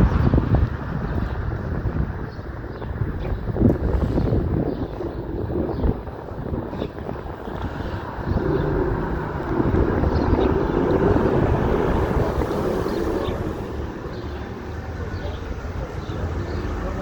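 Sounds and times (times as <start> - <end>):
vehicle passing: 6.2 - 17.0.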